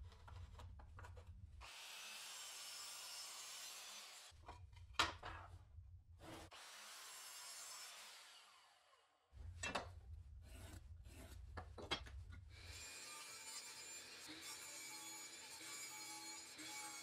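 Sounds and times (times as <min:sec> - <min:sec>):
hand tool scraping wood: 0:10.4 - 0:11.6.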